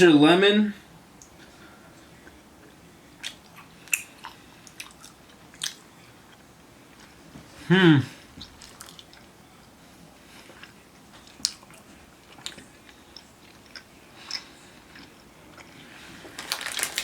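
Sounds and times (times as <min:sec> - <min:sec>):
person chewing gummy candy: 0:08.4 - 0:09.3, 0:10.4 - 0:17.0
crinkling rustle: 0:08.5 - 0:09.2, 0:15.8 - 0:17.0.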